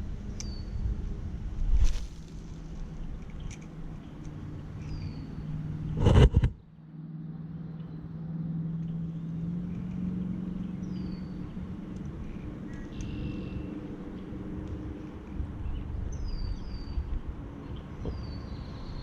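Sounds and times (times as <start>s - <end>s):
low engine hum: 0.0s - 19.0s
loud rustle or thump: 1.6s - 2.8s.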